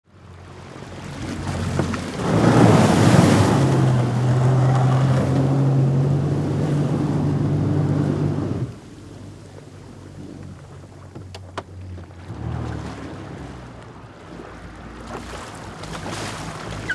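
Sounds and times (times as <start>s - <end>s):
jet ski engine drone: 0.1s - 16.9s
rushing water spray: 1.2s - 9.3s, 15.3s - 16.9s.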